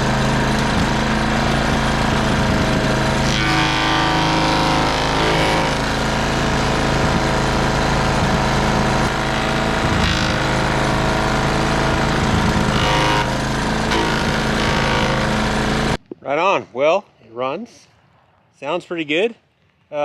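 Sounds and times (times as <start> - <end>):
small gasoline engine running: 0.0 - 16.0.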